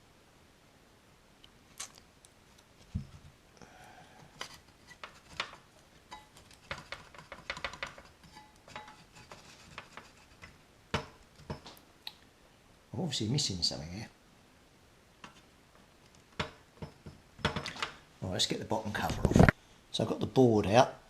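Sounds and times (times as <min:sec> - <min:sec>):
hands clicking and tapping on chassis: 0:05.0 - 0:08.2.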